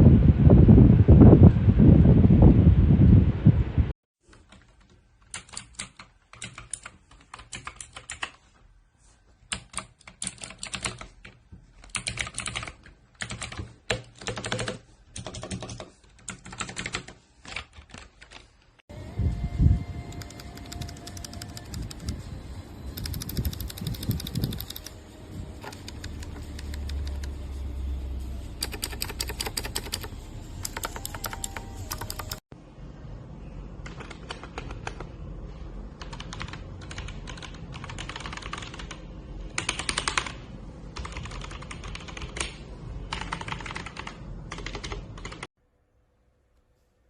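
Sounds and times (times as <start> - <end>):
mechanical keyboard typing: 4.3 - 8.4, 9.5 - 18.4, 20.1 - 22.3, 22.9 - 27.4, 28.5 - 32.4, 33.8 - 35.1, 36.0 - 39.0, 39.6 - 40.4, 41.0 - 45.5.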